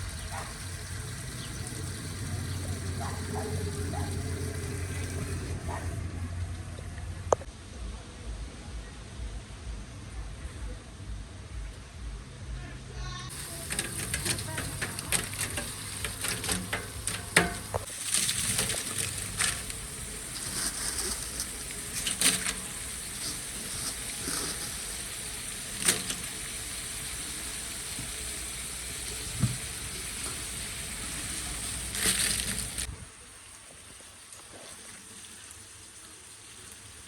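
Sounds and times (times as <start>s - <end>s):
clicks and knocks: 13.3s - 20.0s
food sizzling in a pot: 13.3s - 32.9s.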